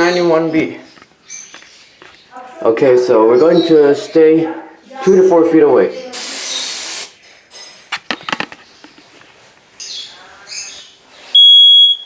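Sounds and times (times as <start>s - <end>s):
aerosol can spraying: 6.1s - 7.2s
high-pitched smoke alarm tone: 11.4s - 12.0s.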